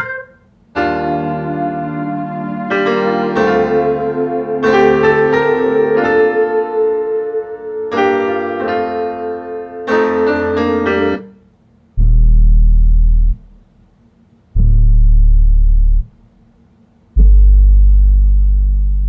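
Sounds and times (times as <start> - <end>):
electric piano chords: 0.0 - 11.3
deep bass notes: 12.0 - 13.7, 14.6 - 16.2, 17.2 - 19.0.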